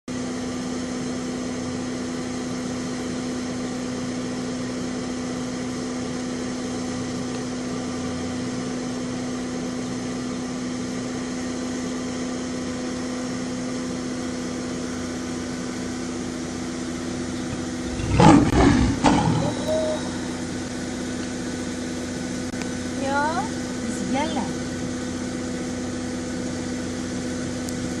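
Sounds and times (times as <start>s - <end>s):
steady hum: 17.2s - 21.2s
lion roar: 17.4s - 20.5s.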